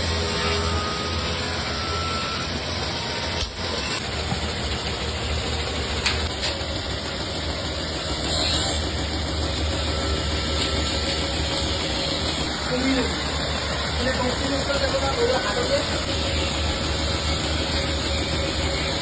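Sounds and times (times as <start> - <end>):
machine motor humming: 0.0 - 19.0.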